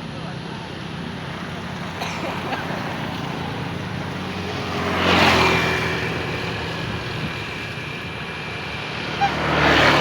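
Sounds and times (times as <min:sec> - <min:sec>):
vehicle passing by: 0:02.6 - 0:10.0.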